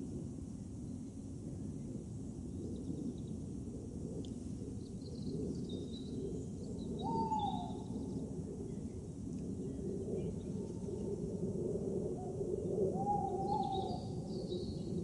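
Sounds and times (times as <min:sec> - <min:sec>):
steady low rumble: 0:00.0 - 0:07.0.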